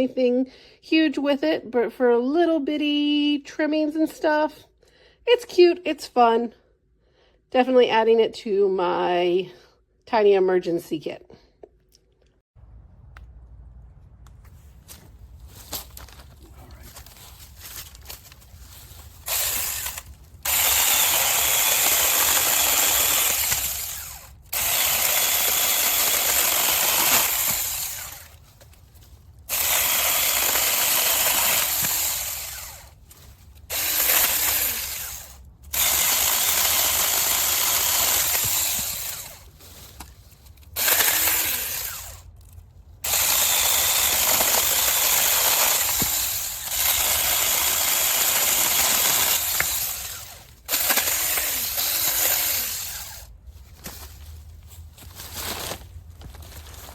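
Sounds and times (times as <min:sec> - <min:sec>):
electric mini chainsaw running: 0:19.2 - 0:28.4, 0:29.5 - 0:33.0, 0:33.6 - 0:39.5, 0:40.8 - 0:42.3, 0:43.0 - 0:53.3.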